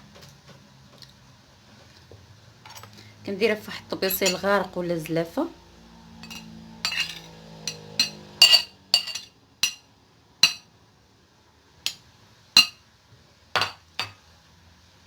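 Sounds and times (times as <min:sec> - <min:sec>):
spoon clinking against dish: 0:04.1 - 0:04.5, 0:06.2 - 0:09.8, 0:10.4 - 0:10.7, 0:12.6 - 0:12.8.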